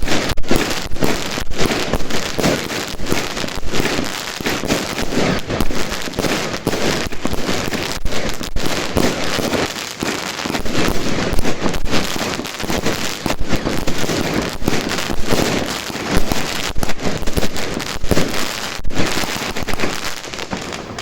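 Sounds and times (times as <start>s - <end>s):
firework crackling: 0.0s - 21.0s.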